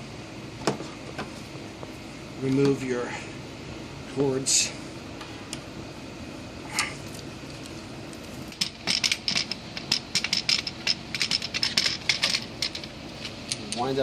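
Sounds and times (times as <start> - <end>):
hose fittings clattering: 8.6 - 13.9.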